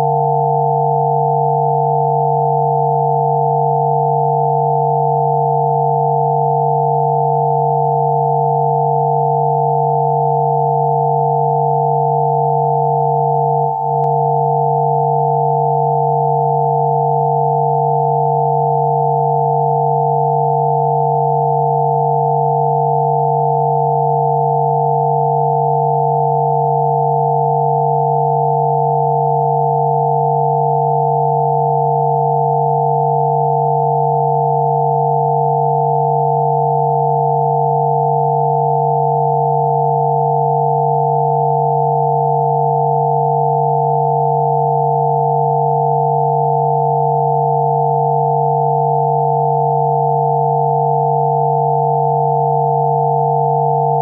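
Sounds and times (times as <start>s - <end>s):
steady sine-wave tones: 0.0s - 54.0s.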